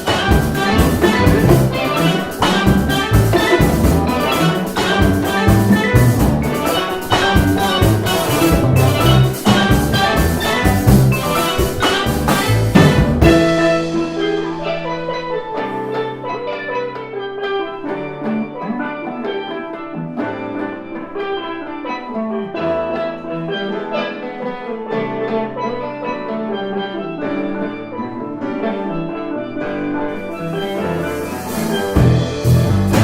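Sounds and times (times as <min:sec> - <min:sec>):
bass notes: 0:00.0 - 0:14.9, 0:31.0 - 0:33.0
drums: 0:00.0 - 0:24.4, 0:30.3 - 0:33.0
steel pan melody: 0:00.0 - 0:33.0.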